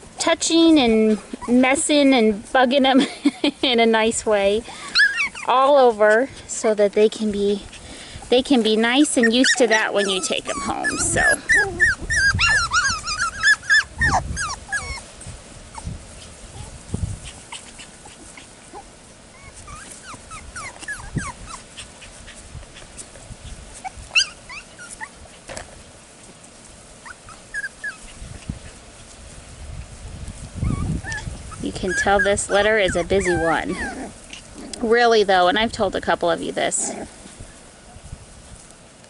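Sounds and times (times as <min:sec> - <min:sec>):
puppies whimpering and yipping: 0:00.8 - 0:02.2, 0:04.6 - 0:06.9, 0:07.7 - 0:25.5, 0:27.0 - 0:29.0, 0:30.4 - 0:34.9.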